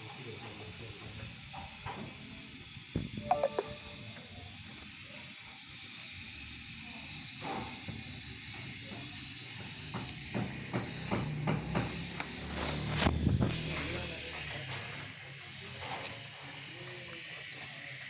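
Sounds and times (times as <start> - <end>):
pool pump hissing: 3.7 - 18.0.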